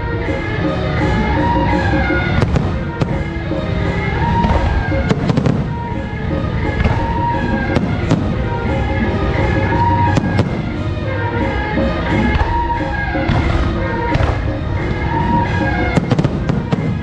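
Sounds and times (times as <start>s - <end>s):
loud music with horn-like tones: 0.0s - 17.0s
electronic firecrackers popping: 1.4s - 5.9s, 6.7s - 8.7s, 12.2s - 17.0s.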